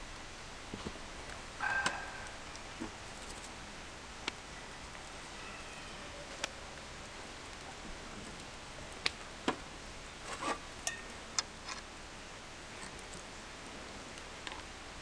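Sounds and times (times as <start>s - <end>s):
tableware clicking and clinking: 10.3s - 11.8s.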